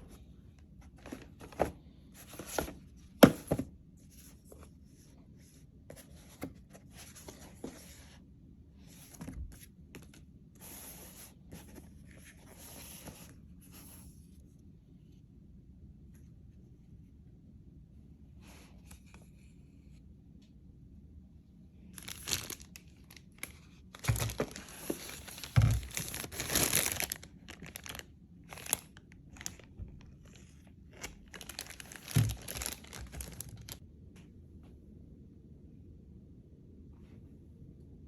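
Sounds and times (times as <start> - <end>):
packaging crinkling and tearing: 22.0 - 33.8.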